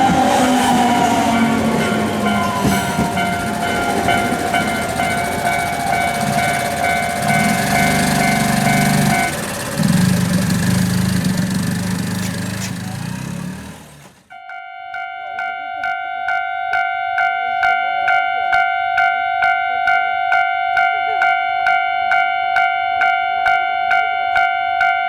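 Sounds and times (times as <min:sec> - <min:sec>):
level crossing warning bell: 0:00.0 - 0:13.3, 0:14.3 - 0:25.0
train wheels rumbling on rails: 0:00.0 - 0:14.3.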